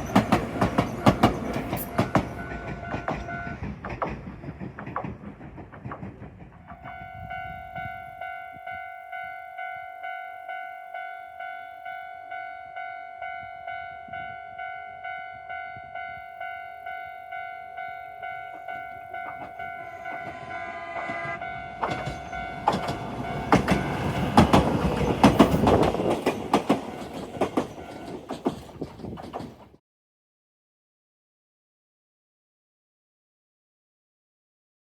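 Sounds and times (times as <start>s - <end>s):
train wheels clattering: 0.0s - 7.3s, 18.8s - 29.8s
level crossing alarm tone: 6.8s - 24.8s.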